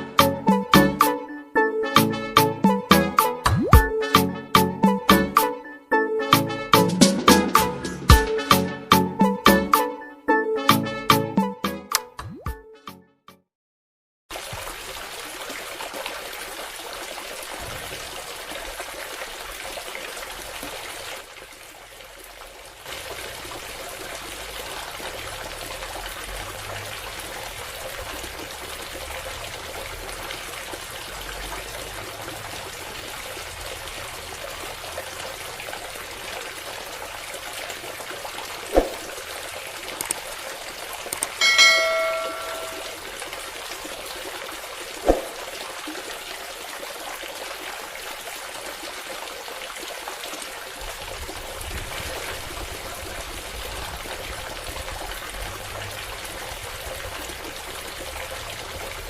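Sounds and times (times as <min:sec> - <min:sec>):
water trickling and splashing: 0:14.3 - 0:59.0
sharp click: 0:41.2 - 0:41.4.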